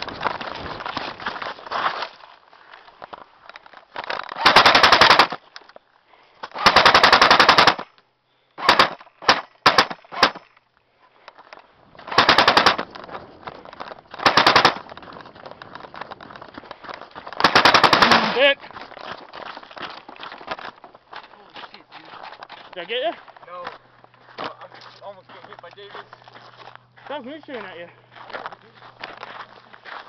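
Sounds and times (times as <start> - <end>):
airsoft gun automatic bursts: 4.2 - 5.4, 6.5 - 8.0, 8.6 - 10.5, 12.0 - 12.9, 14.1 - 14.9, 17.4 - 18.6.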